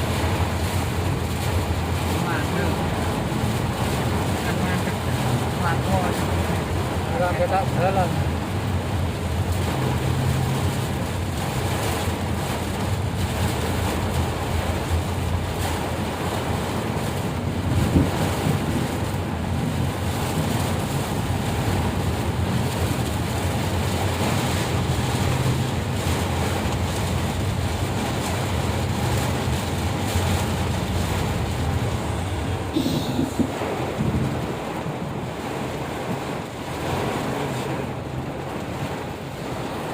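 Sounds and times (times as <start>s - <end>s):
low engine drone: 0.0s - 35.4s
heavy rain: 0.0s - 39.9s
wind buffeting microphone: 8.2s - 39.9s.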